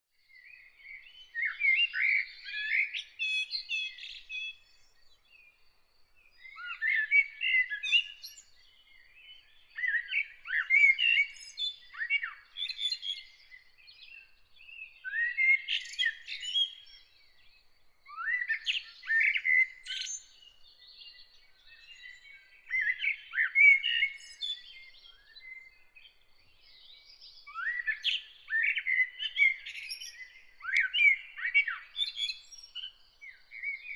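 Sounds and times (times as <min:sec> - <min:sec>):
songbird singing: 0:00.1 - 0:33.9.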